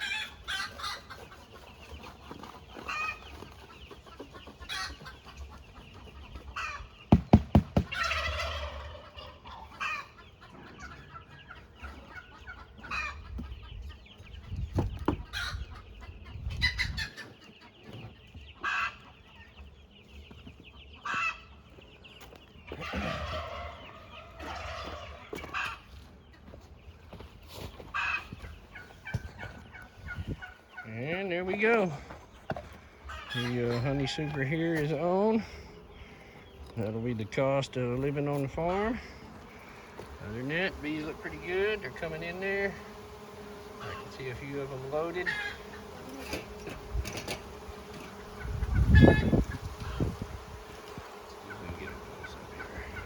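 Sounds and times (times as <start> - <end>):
chickens clucking: 0.0 - 53.0
sharp loud knocks: 7.1 - 8.0.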